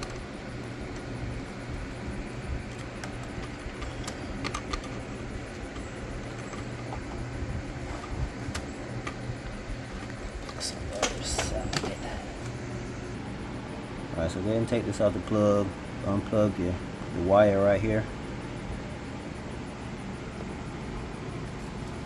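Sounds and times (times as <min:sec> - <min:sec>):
low background rumble: 0:00.0 - 0:22.0
screwdriver and plastic clicks: 0:02.7 - 0:12.0.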